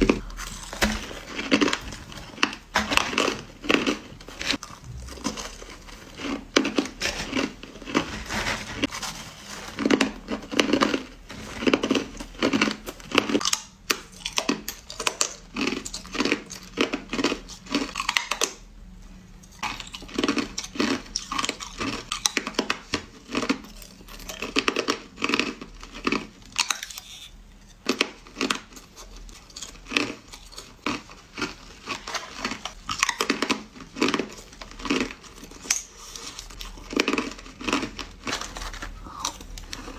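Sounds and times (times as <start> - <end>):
crushed ice crunching: 0.0 - 13.4, 28.9 - 39.9.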